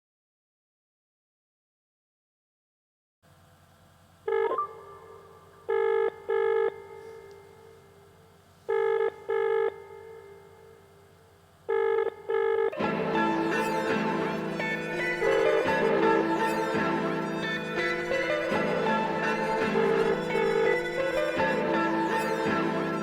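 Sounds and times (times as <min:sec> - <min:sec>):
telephone ringback tone: 0:04.3 - 0:07.7, 0:08.7 - 0:10.5, 0:11.7 - 0:14.0
music: 0:12.8 - 0:23.0.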